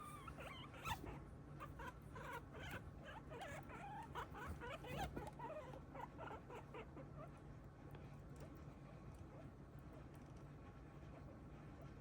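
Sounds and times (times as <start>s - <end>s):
guinea pig squeaking: 0.0s - 7.3s.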